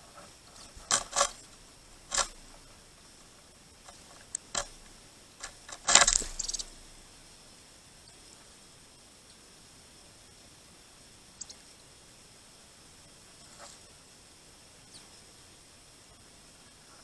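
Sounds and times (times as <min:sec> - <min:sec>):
birds tapping at a feeder: 0:03.9 - 0:07.0.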